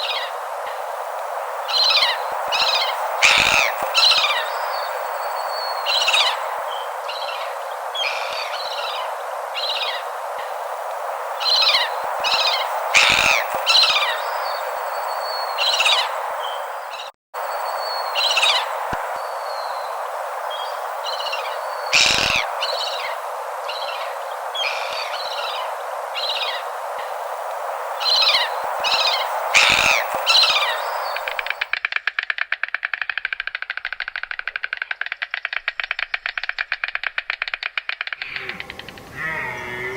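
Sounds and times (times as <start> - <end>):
steady hiss: 0.0 - 31.8
short high bird calls: 1.7 - 9.0, 11.4 - 17.1, 17.7 - 26.7, 28.0 - 31.7.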